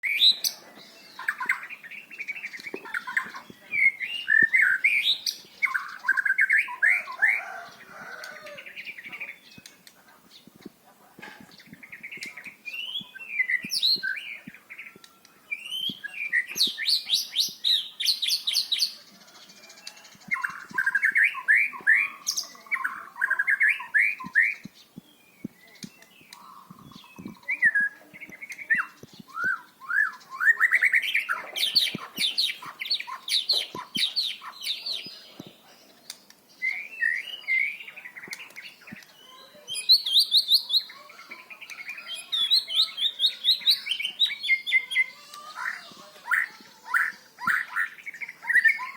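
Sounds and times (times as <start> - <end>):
bird singing whistled phrases: 12.1 - 18.7, 36.6 - 48.9.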